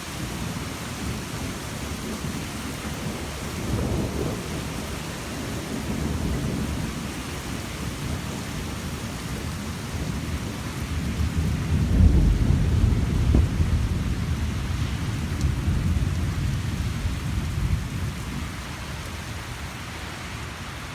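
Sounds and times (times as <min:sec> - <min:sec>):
rain falling: 0:00.0 - 0:20.9.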